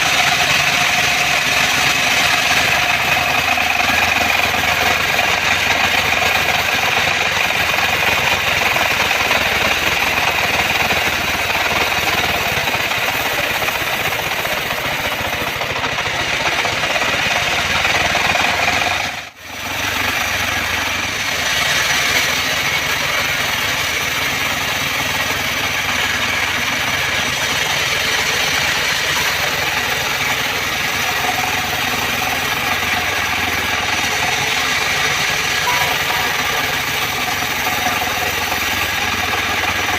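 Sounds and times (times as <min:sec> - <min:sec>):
band sawmill cutting log: 0:00.0 - 0:39.9.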